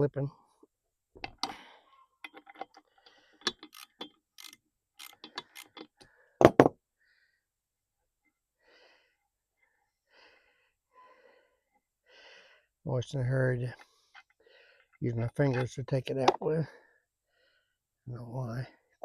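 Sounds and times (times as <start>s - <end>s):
ratchet wrench clicks: 3.4s - 5.9s.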